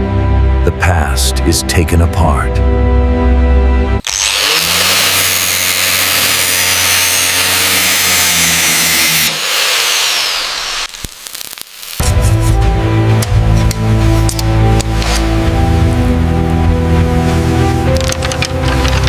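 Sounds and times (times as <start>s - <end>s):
music: 0.0s - 9.3s, 12.0s - 19.0s
power tool grinding: 4.0s - 12.0s.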